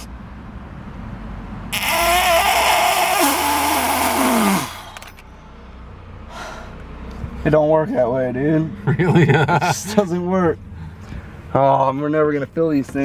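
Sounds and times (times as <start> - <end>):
wavering whistle: 1.8 - 4.8
compressed air hissing: 1.8 - 5.2.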